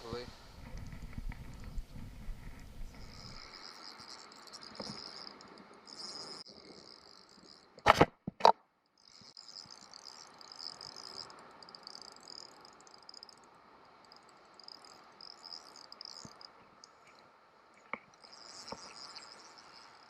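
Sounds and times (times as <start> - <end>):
insects chirring: 0.0 - 7.9, 8.8 - 20.0.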